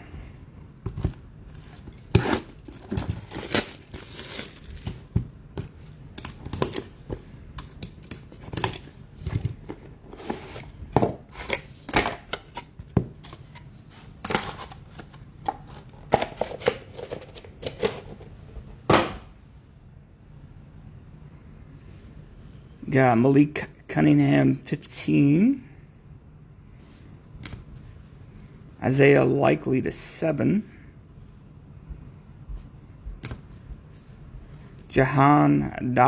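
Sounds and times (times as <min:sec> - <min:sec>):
card wrappers crinkling: 0:01.5 - 0:05.1.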